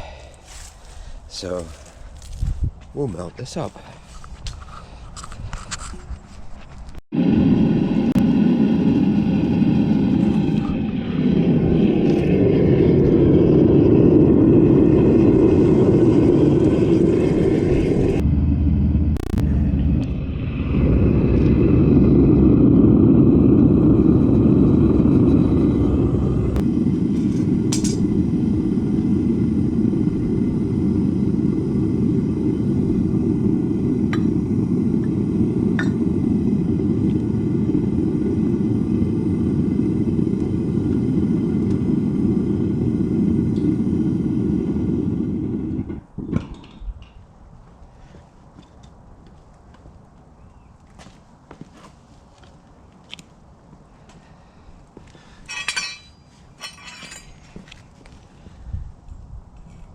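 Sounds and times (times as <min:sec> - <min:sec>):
furnace burner low rumble: 0:00.0 - 0:49.8, 0:53.1 - 0:59.9.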